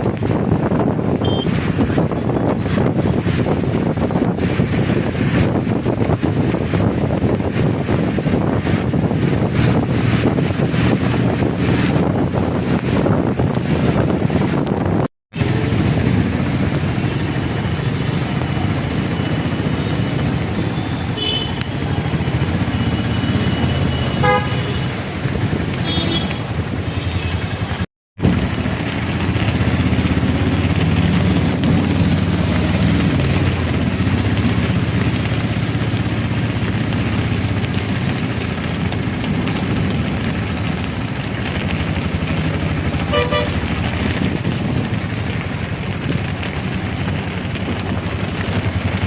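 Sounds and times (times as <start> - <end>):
motorbike and car engines: 0.0 - 49.0
short horn toots: 43.1 - 43.6.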